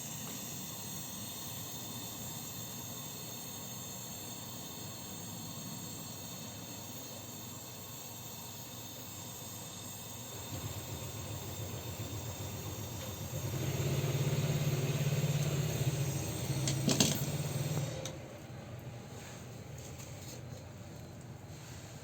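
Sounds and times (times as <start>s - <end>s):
motor hum: 10.3s - 18.4s.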